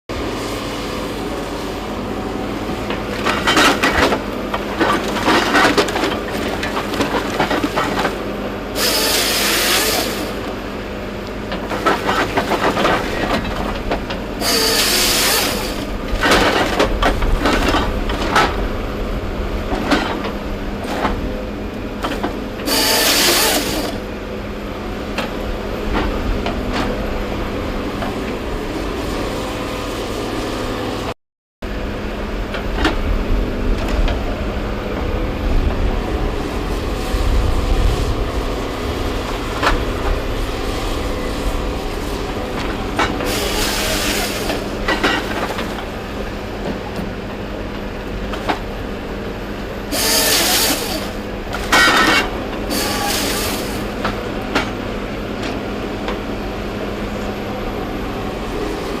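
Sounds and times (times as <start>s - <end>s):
diesel engine running: 0.1s - 59.0s
hydraulic hissing: 52.6s - 53.9s.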